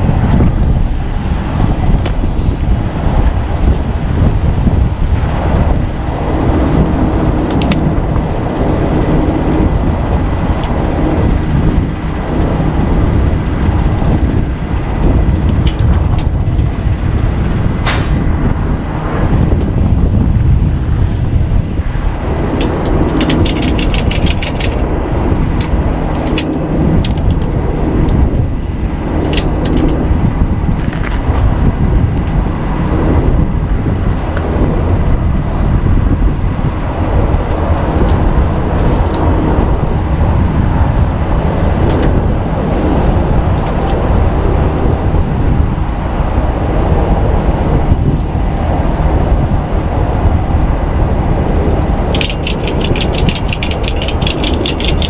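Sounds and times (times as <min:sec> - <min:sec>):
heavy truck rumbling: 0:00.0 - 0:55.0
road and traffic noise: 0:00.0 - 0:55.0
sharp clicks: 0:07.5 - 0:07.8, 0:22.6 - 0:24.8, 0:25.6 - 0:27.5, 0:52.1 - 0:55.0.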